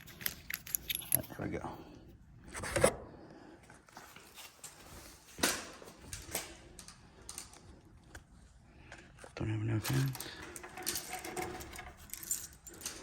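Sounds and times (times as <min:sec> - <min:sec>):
metal hardware clicks and knocks: 0:00.0 - 0:01.5, 0:09.8 - 0:13.0.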